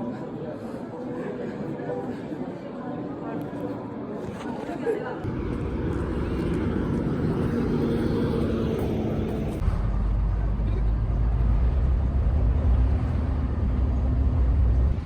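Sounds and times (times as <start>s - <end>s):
deep low rumble: 5.2s - 15.0s
vehicle hum: 5.2s - 15.0s.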